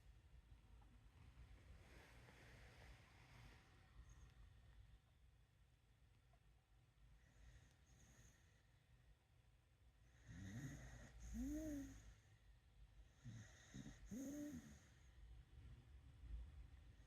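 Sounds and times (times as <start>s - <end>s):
dog snoring: 10.1s - 12.3s, 13.1s - 15.1s.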